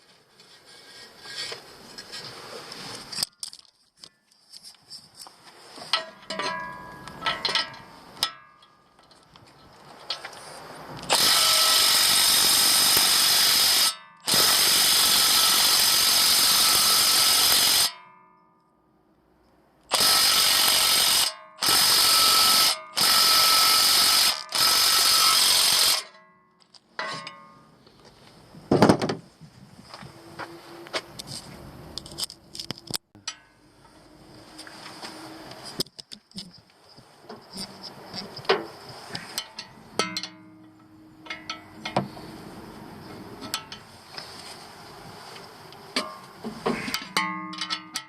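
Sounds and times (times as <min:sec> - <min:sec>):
power tool running in bursts: 0:11.1 - 0:17.9, 0:19.9 - 0:26.0.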